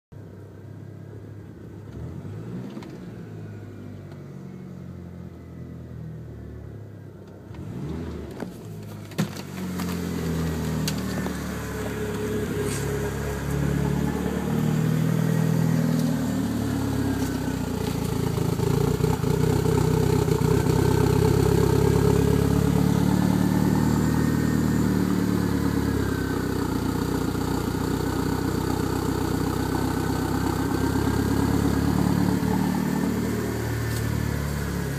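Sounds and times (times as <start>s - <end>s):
car engine misfiring and sputtering: 7.2s - 34.9s.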